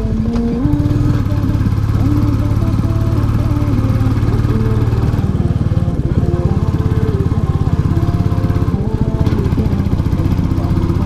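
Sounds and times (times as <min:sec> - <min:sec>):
motorcycle engine pulsing exhaust: 0:00.0 - 0:11.0.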